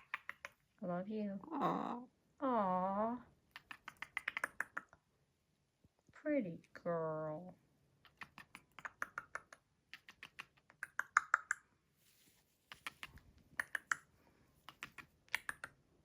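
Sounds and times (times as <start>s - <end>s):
parrot beak clicks: 0.0s - 0.6s, 3.5s - 5.0s, 8.0s - 11.7s, 12.7s - 15.8s.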